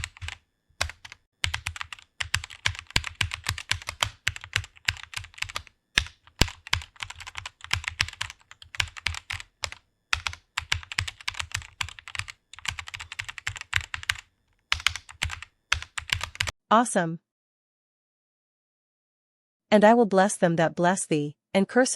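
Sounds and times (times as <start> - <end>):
fast typing on a keyboard: 0.0 - 16.6.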